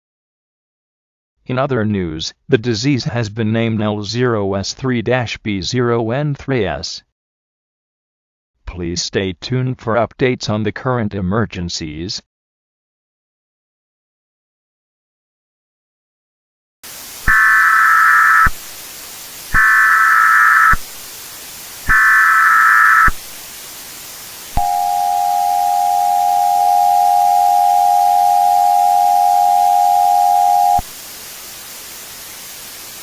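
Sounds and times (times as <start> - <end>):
static hiss: 16.9 - 33.0
data header bursts: 17.0 - 33.0
two-tone attention signal: 17.3 - 18.6, 19.5 - 20.8, 21.9 - 23.2, 24.6 - 30.9.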